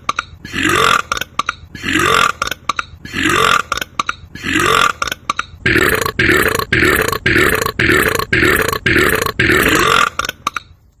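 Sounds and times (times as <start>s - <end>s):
man burping: 5.6s - 10.2s.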